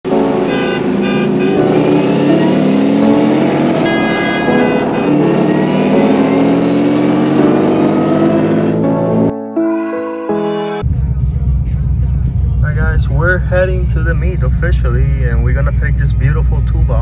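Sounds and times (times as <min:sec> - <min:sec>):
car engine accelerating hard: 0:00.1 - 0:09.3.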